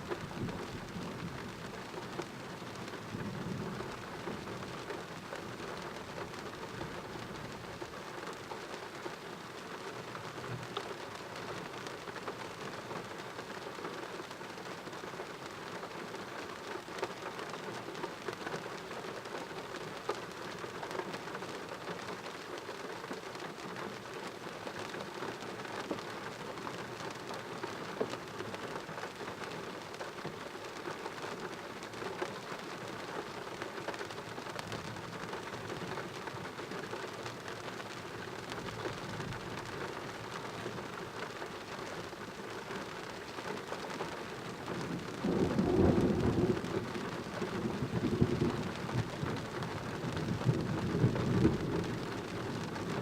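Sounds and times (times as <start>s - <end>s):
heavy rain falling: 0.0s - 53.0s
sharp rain drop hits: 43.1s - 53.0s
low rumble of thunder: 44.7s - 53.0s.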